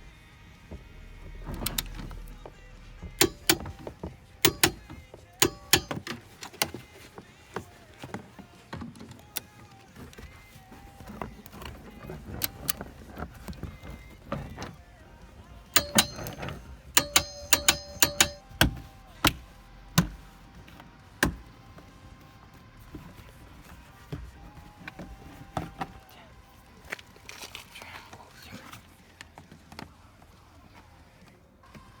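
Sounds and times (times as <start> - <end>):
clicks and knocks: 0.6 - 20.4, 21.2 - 21.6
sharp metallic clicks and ringing: 0.7 - 6.8, 12.4 - 14.7, 15.4 - 20.4, 21.2 - 21.5.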